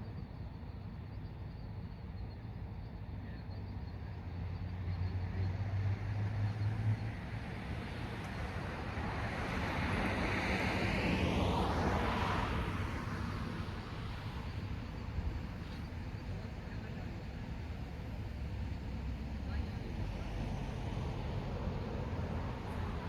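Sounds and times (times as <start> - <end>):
car driving past: 5.0 - 14.9, 18.8 - 23.0.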